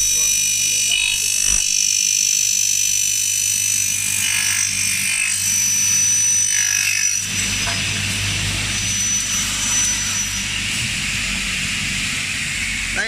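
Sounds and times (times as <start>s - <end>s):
saw running with high whine: 0.0s - 13.0s
saw blade cutting metal: 3.5s - 11.3s.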